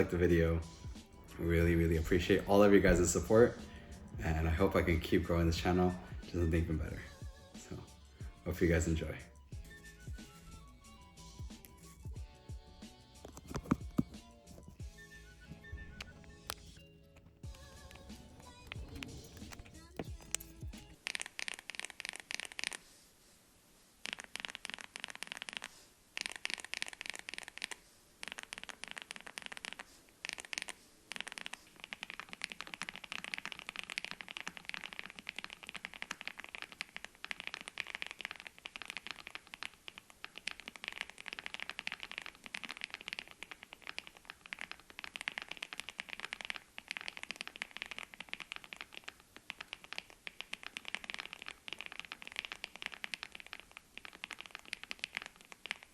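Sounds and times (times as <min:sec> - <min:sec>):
fast typing on mechanical keyboard: 0:28.3 - 0:55.9.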